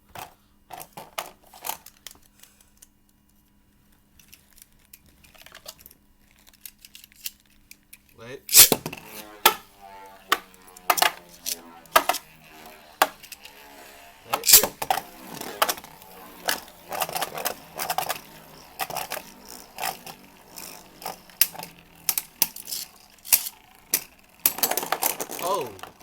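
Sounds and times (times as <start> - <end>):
spinning top whirring: 8.5 - 26.0
spinning tops clacking: 8.5 - 26.0.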